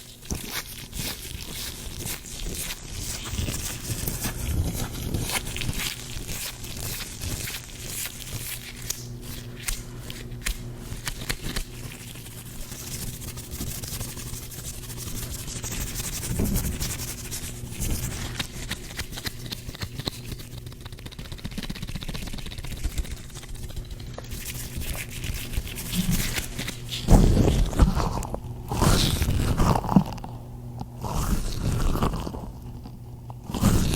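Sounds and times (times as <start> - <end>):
gloved hands rubbing together: 0.0 - 27.1.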